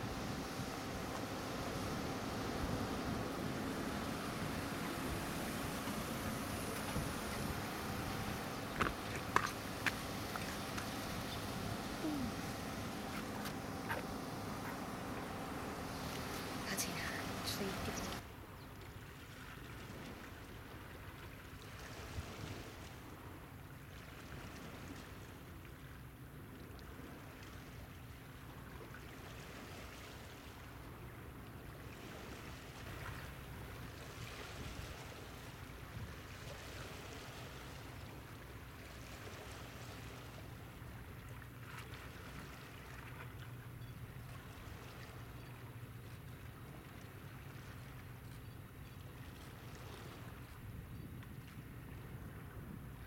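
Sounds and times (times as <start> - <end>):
low hum: 0.0 - 18.2.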